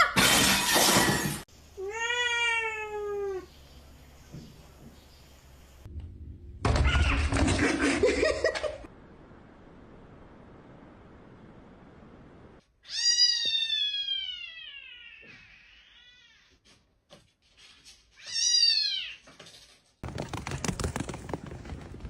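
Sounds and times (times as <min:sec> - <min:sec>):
cat meowing: 0:12.8 - 0:16.6.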